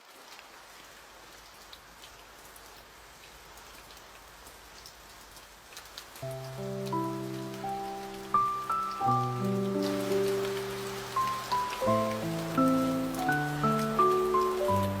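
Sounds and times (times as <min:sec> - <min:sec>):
light rain falling: 0:00.0 - 0:15.0
soft melody: 0:06.2 - 0:15.0.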